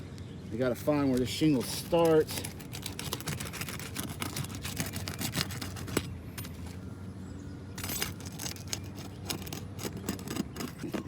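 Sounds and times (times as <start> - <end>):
metal tool scraping shingles: 1.4 - 6.7, 7.8 - 11.0.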